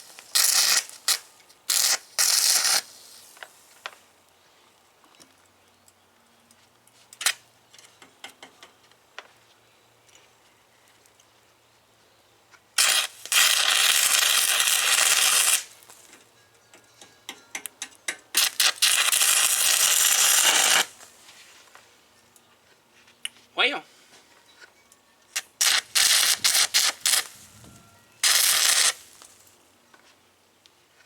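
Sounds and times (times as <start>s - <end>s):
welding arc crackle: 0.0s - 3.5s, 7.2s - 7.4s, 12.8s - 16.2s, 18.3s - 21.1s, 25.4s - 29.6s.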